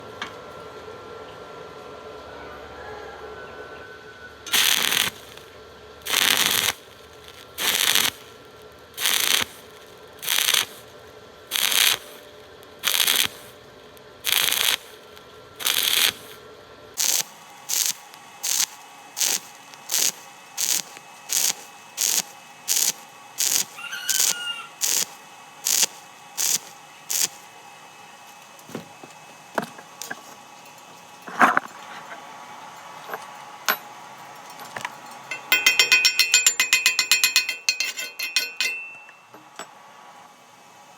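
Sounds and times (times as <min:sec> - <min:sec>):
arc welding crackle bursts: 0:04.5 - 0:28.6.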